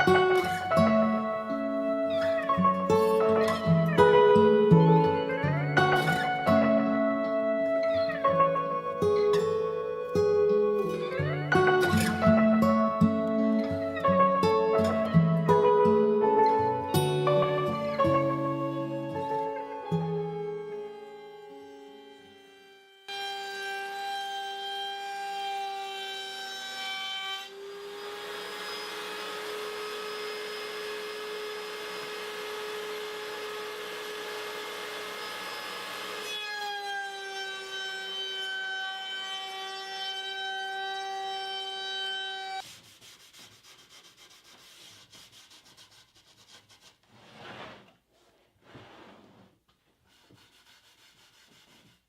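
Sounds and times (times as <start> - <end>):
power saw whining: 17.2 - 42.6
saw cutting through wood: 20.9 - 47.0
faint rubbing of wood: 42.6 - 52.0.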